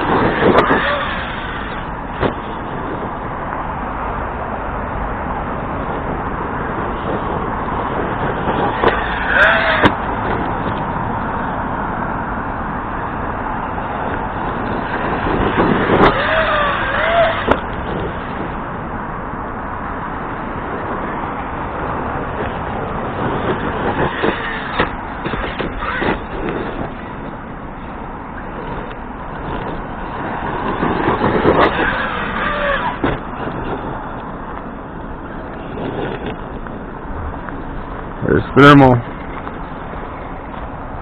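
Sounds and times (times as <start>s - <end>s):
toy truck motor whining: 0.0s - 1.9s, 8.8s - 10.0s, 15.6s - 17.7s, 24.1s - 27.0s, 31.3s - 33.6s
steady rushing noise: 0.0s - 41.0s.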